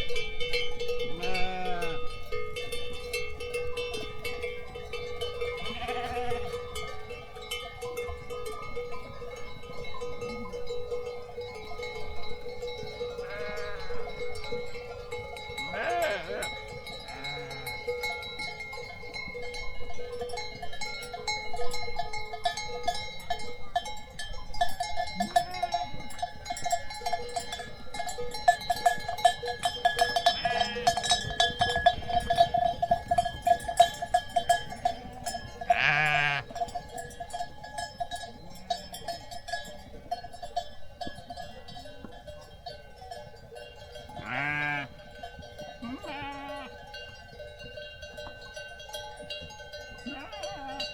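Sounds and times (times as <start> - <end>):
animal bells clanking: 0.0 - 50.9
sheep and goats bleating: 1.0 - 2.2, 5.3 - 7.0, 13.1 - 14.4, 15.6 - 18.0, 25.2 - 25.9, 30.1 - 31.2, 34.8 - 36.6, 44.2 - 45.1, 45.7 - 46.9, 50.0 - 50.9.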